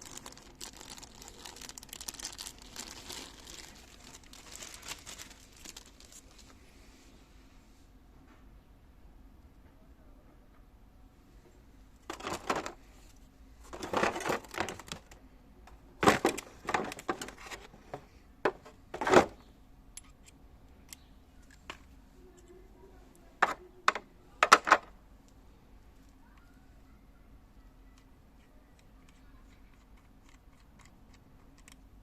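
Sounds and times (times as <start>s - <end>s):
packaging rustling: 0.0s - 6.6s, 12.1s - 12.8s, 13.6s - 15.2s, 16.0s - 17.7s
clatter and knocks of parts: 12.0s - 12.8s, 13.6s - 19.4s.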